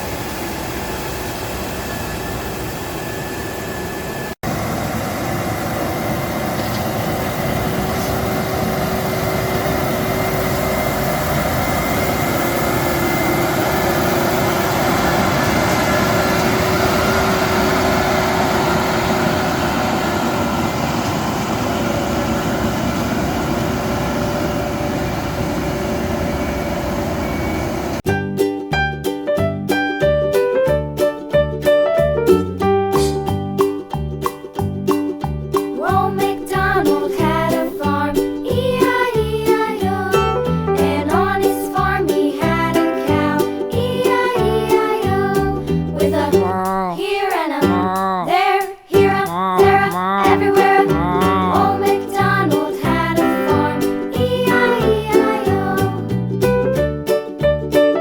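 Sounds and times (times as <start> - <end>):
construction machinery engine drone: 0.0 - 28.0, 35.8 - 47.0, 49.1 - 56.9
machinery whining tones: 0.0 - 28.0
piano music: 28.0 - 48.0, 49.0 - 58.0.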